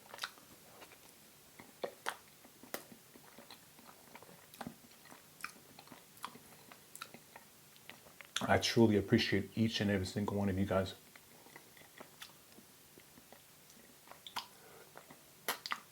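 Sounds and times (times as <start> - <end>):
person chewing: 0.0 - 8.5, 11.0 - 15.9.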